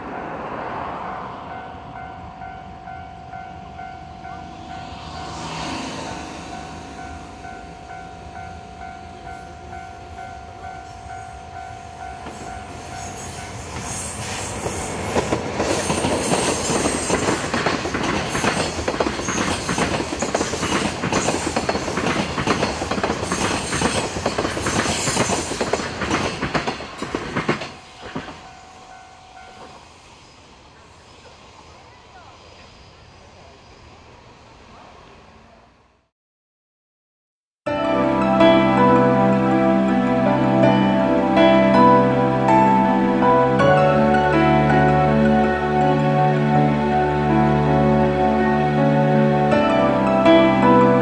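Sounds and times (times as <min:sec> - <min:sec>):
level-crossing warning bell: 0:01.4 - 0:29.9, 0:37.7 - 0:51.0
train wheels clattering: 0:12.2 - 0:28.5.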